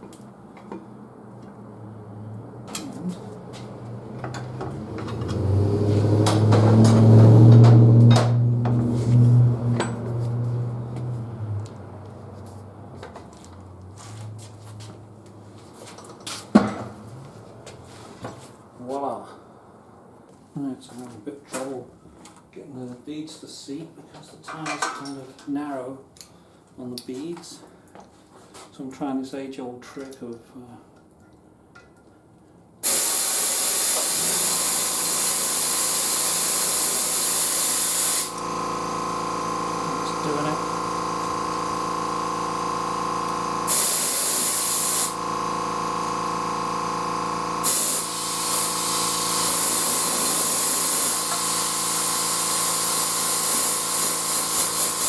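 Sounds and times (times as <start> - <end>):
compressed air hissing into tire: 32.8 - 38.5, 43.6 - 45.2, 47.6 - 55.0.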